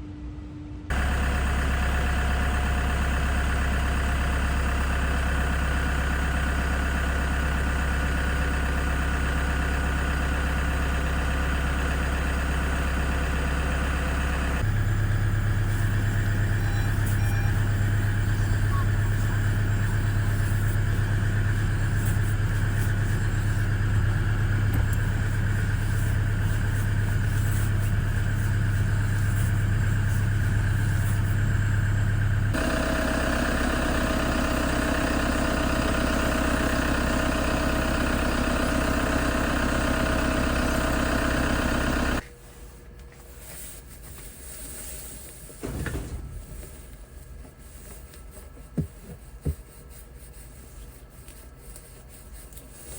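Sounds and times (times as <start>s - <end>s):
van engine running: 0.9s - 52.9s
faint rubbing sounds: 46.2s - 52.9s.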